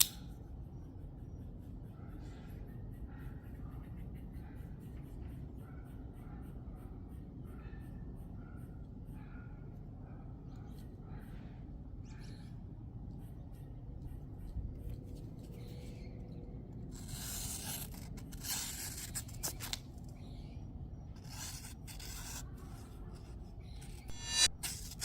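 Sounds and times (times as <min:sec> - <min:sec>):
knife blade scraping: 0:00.0 - 0:00.3, 0:16.9 - 0:20.4, 0:21.2 - 0:25.0
steady low hum: 0:00.0 - 0:25.0.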